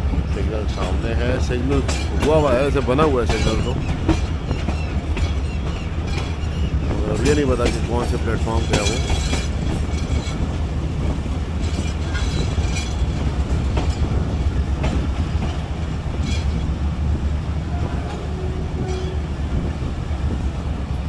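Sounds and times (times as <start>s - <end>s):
train rumbling: 0.0s - 21.0s
wheels clicking over rail joints: 0.6s - 17.2s.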